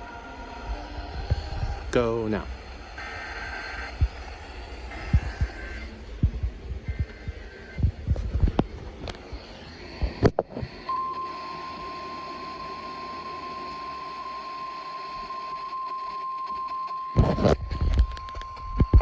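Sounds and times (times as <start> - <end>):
steady alarm tone: 0.0 - 19.0.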